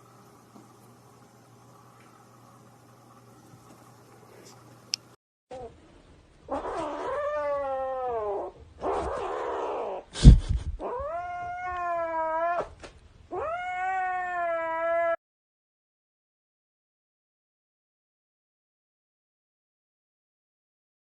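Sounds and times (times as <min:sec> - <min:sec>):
cat yowling: 0:06.5 - 0:10.1, 0:10.8 - 0:15.2.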